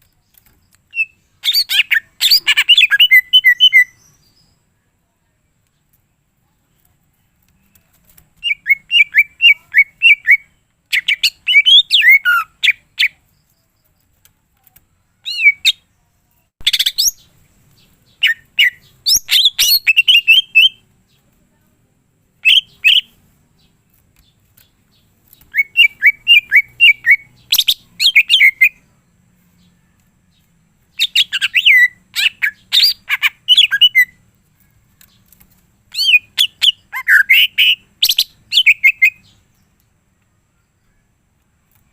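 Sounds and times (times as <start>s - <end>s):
bird chirping and trilling: 0.2s - 4.6s, 8.4s - 13.6s, 15.1s - 15.9s, 16.6s - 20.8s, 22.4s - 28.9s, 29.6s - 39.7s.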